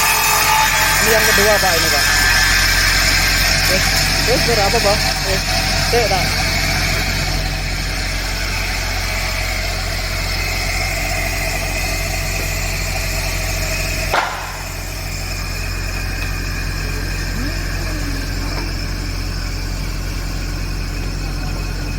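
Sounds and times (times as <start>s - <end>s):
saw motor humming and whining: 0.0s - 21.9s
short sharp falling sound: 14.1s - 15.0s.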